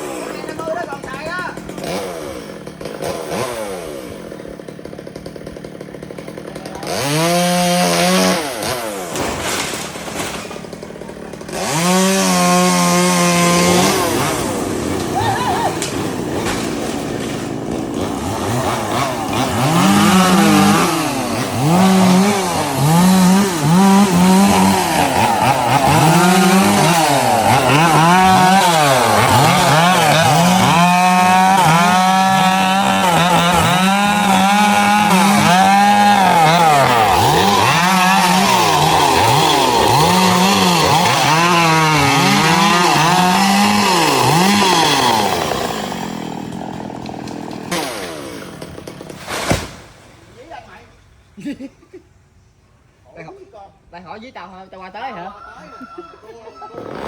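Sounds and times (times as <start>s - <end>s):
chainsaw revving: 0.0s - 50.0s, 56.6s - 57.0s.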